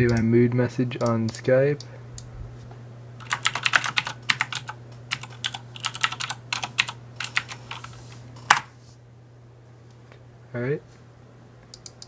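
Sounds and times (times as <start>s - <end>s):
steady low hum: 0.0s - 12.0s
clicky mechanical keyboard typing: 3.2s - 8.7s, 11.7s - 12.0s.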